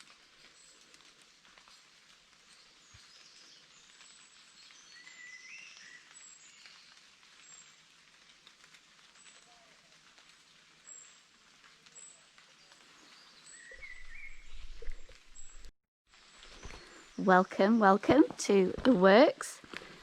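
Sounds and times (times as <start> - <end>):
faint outdoor ambience: 9.1 - 20.0
bird chirps: 13.0 - 15.7.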